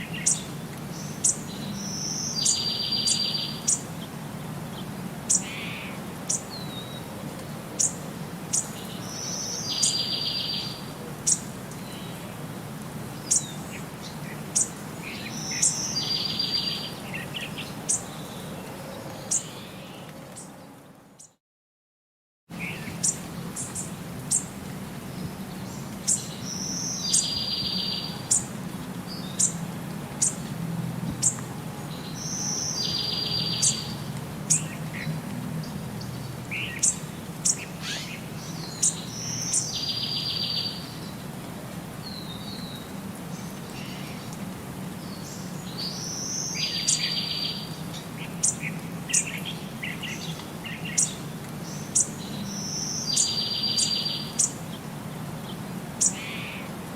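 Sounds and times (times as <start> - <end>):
birds chirping: 0.0 - 12.4, 13.2 - 21.4, 22.6 - 29.6, 31.2 - 41.2, 42.0 - 54.8.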